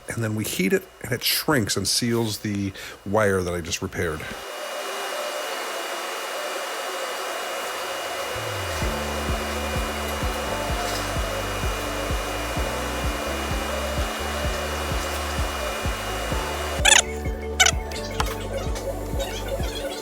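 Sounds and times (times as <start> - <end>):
heat gun blowing with high whine: 0.6 - 18.3
background music with steady beat: 8.7 - 20.0.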